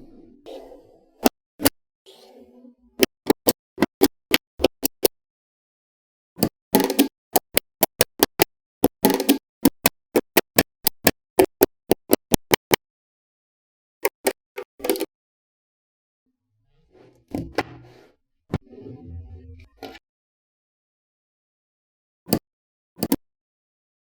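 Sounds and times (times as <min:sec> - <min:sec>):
magnetic balls clicking together: 0:06.8 - 0:12.8.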